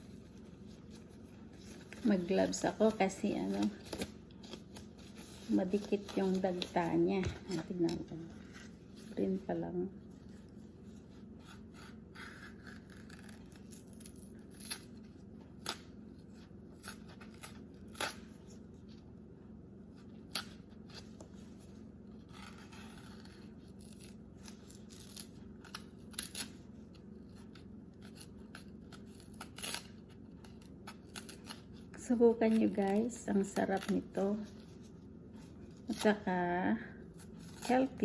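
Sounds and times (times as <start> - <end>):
faint steady hum: 0.0 - 38.0
knife cutting plantain: 11.4 - 15.0.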